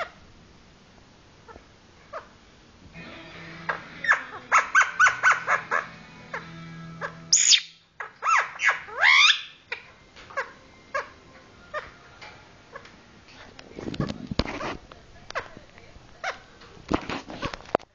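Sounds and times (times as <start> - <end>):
lovebird chirping: 3.6 - 12.9
bird swooping calls: 4.0 - 9.6
bird shrill squeak: 7.3 - 9.6.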